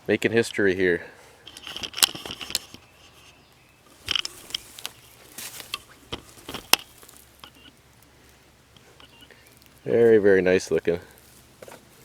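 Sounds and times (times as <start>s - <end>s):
light knocks taps and scrapes: 11.1s - 12.0s.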